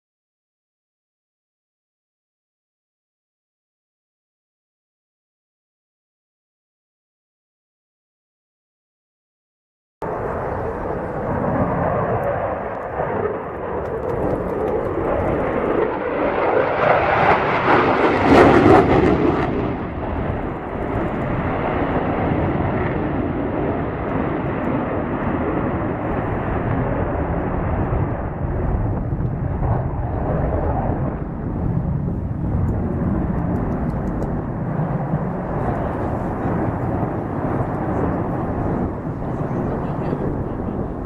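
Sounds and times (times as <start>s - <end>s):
plane flying past: 10.0s - 41.0s.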